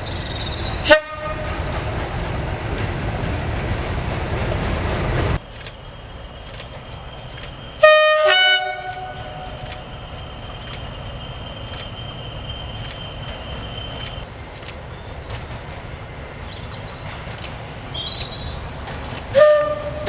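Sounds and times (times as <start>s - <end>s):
locomotive horn toot: 0.8s - 1.7s, 7.7s - 14.2s, 19.3s - 20.0s.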